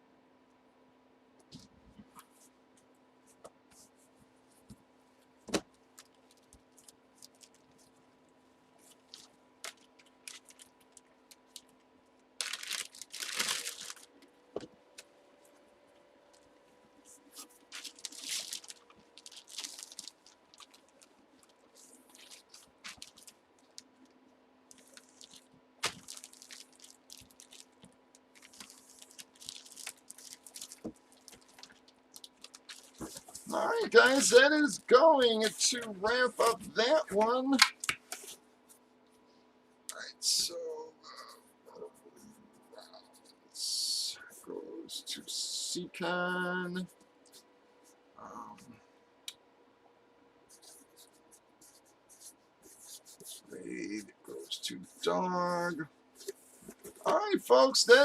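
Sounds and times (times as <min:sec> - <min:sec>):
faint electrical hum: 0:00.0 - 0:58.0
plastic packaging crinkling: 0:05.8 - 0:07.9, 0:08.8 - 0:11.8, 0:12.4 - 0:14.2, 0:17.4 - 0:24.1, 0:24.7 - 0:34.4.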